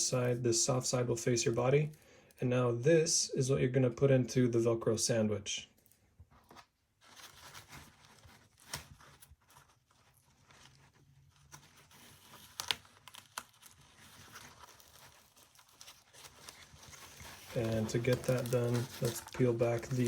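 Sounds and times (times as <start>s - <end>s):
velcro and fabric rustling: 6.3s - 20.0s.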